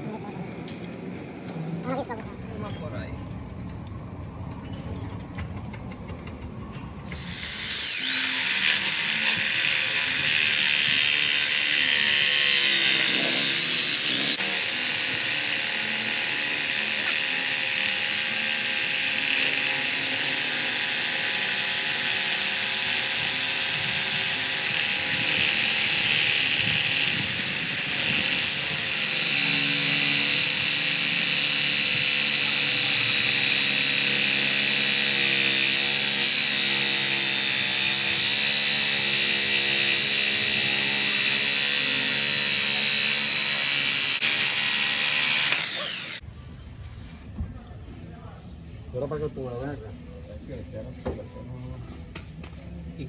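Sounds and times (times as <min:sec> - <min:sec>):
power tool whining: 0:07.0 - 0:46.2.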